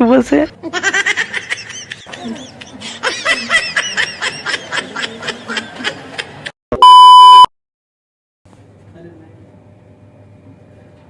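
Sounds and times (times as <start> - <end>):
snickering laughter: 0.7 - 6.5
loud electronic beep: 6.8 - 7.5.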